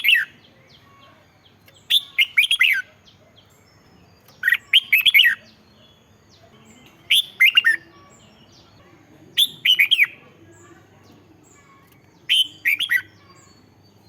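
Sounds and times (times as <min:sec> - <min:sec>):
bird singing whistled notes: 0:01.4 - 0:06.4, 0:07.0 - 0:08.6, 0:09.4 - 0:10.2, 0:12.2 - 0:14.0.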